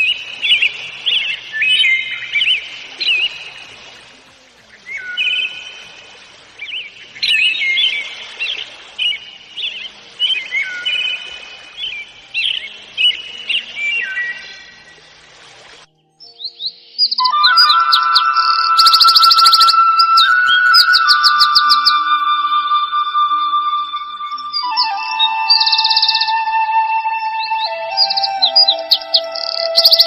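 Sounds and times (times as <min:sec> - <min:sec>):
faint hiss: 0:00.0 - 0:16.2
songbird singing: 0:00.0 - 0:30.0.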